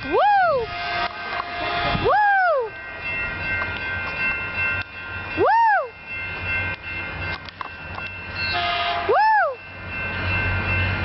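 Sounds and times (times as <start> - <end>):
high-pitched train tones: 0.0 - 11.0
train rumbling past: 0.0 - 11.0.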